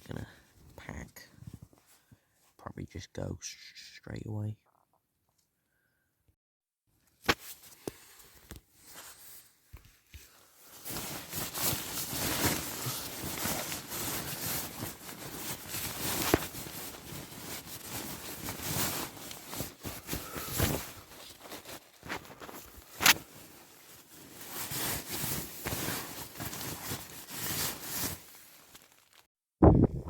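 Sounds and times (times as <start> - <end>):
camping gear rustling and crinkling: 1.4 - 2.4, 7.2 - 29.3.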